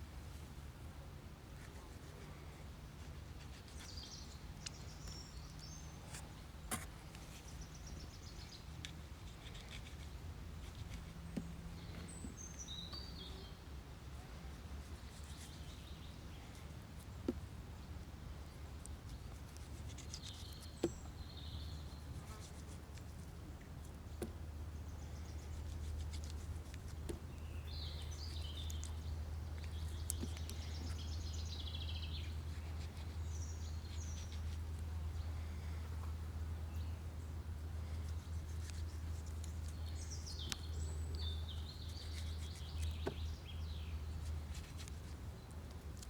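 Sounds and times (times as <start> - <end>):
small birds chirping: 1.6 - 46.0.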